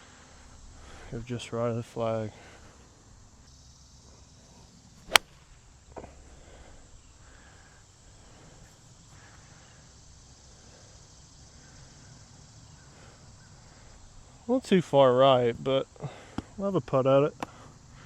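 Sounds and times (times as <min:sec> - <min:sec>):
insects chirring: 0:00.0 - 0:18.0
faint click: 0:05.1 - 0:05.4
golf club striking ball: 0:05.1 - 0:05.8.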